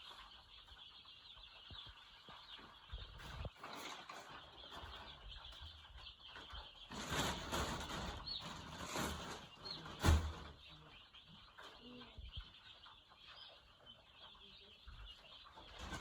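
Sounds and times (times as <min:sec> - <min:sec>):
chicks peeping: 0:00.0 - 0:16.0
rustling and scuffling: 0:06.9 - 0:10.6.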